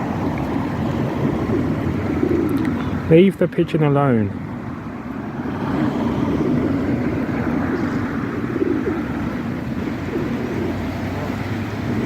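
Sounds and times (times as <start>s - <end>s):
pigeons cooing: 0.0s - 3.1s, 5.7s - 12.0s.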